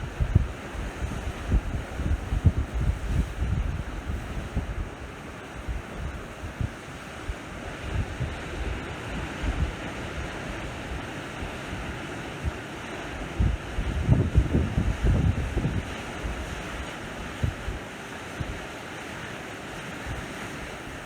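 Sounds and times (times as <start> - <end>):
wind buffeting microphone: 0.0 - 17.8
sea waves washing ashore: 0.0 - 21.0.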